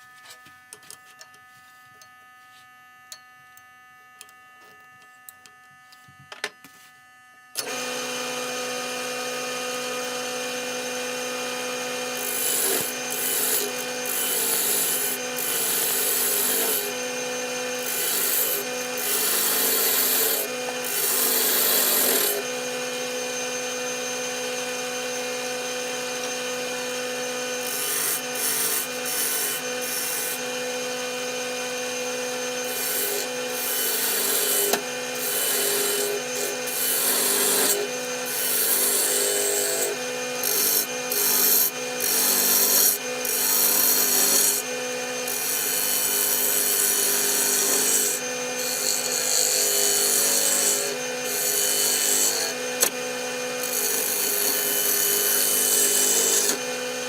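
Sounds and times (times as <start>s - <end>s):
wood lathe humming: 7.6s - 57.0s
tool rasping on spinning wood: 12.1s - 17.0s, 17.8s - 22.4s, 27.6s - 30.4s, 32.6s - 52.6s, 53.6s - 56.6s.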